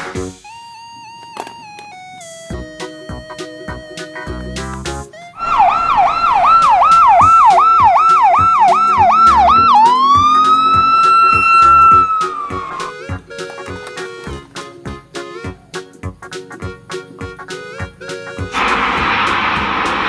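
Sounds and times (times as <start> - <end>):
electronic toy siren: 0.4 - 4.5, 5.1 - 13.2.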